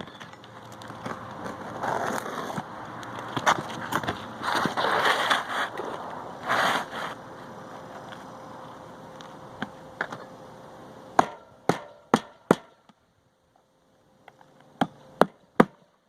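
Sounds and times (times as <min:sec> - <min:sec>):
hatchet hammering nails: 0:11.2 - 0:12.8.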